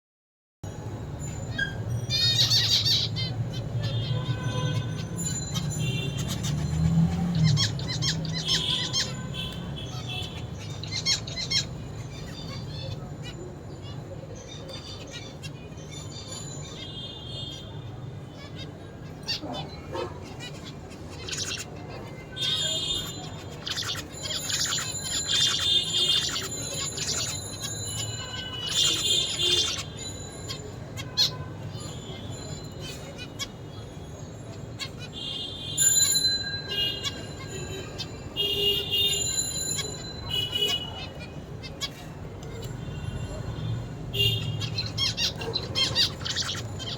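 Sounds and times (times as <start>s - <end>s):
finch buzzy nasal calls: 1.6s - 6.7s, 7.4s - 12.9s, 18.4s - 30.1s, 44.2s - 46.9s.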